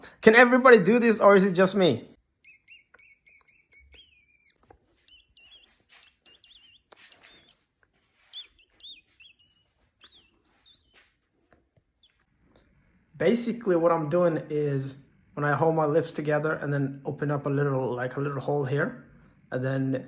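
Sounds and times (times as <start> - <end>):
man making squeaky bird-like chirps: 2.4 - 7.6, 8.2 - 11.1.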